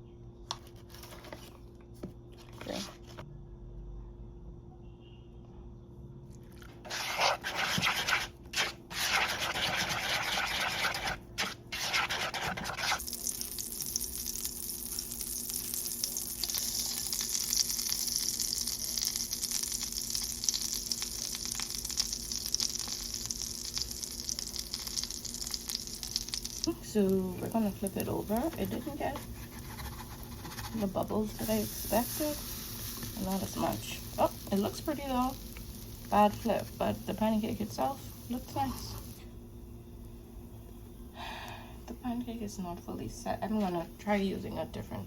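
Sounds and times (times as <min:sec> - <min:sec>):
batter sizzling in a pan: 0:06.9 - 0:39.2.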